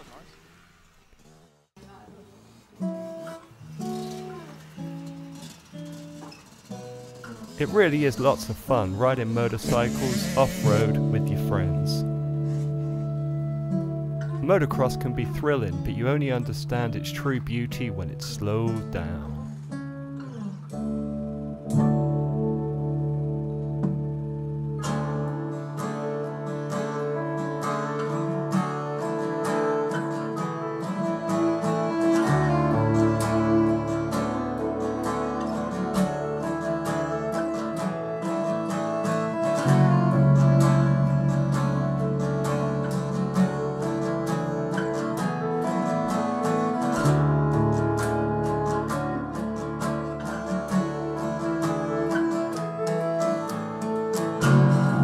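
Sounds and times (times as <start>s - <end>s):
acoustic guitar picking and strumming: 0.0s - 55.0s
bass line: 7.6s - 19.6s.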